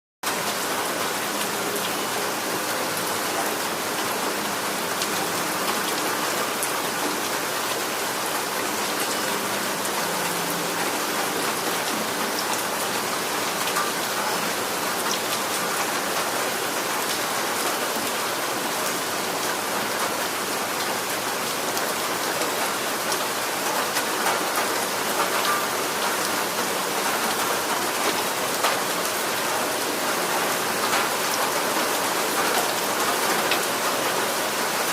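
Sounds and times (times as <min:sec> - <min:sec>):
raindrops ticking on a surface: 0:00.2 - 0:34.9
steady rain falling: 0:00.2 - 0:34.9.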